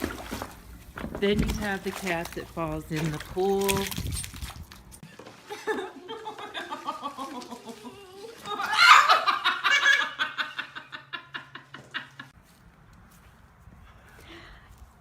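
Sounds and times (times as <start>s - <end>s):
person laughing hard: 5.5s - 12.3s.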